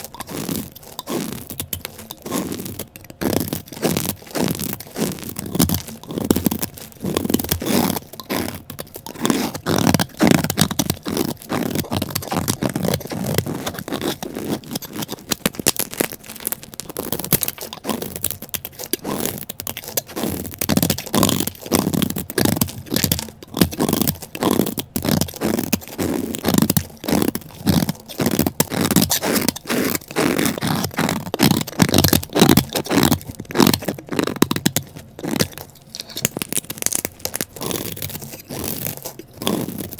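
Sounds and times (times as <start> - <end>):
crumbly chalk scraped and crunched: 0.0 - 39.9.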